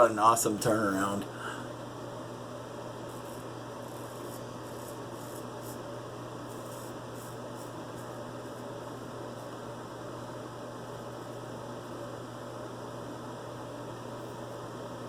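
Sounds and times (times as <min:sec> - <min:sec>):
steady low hum: 0:00.0 - 0:15.0
straight razor scraping stubble: 0:03.1 - 0:05.8.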